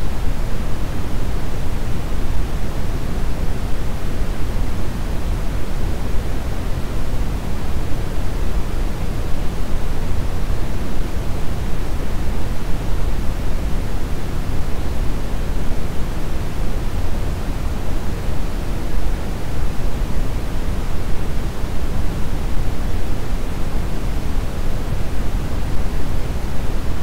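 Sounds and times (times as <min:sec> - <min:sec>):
brown noise rushing hiss: 0:00.0 - 0:27.0.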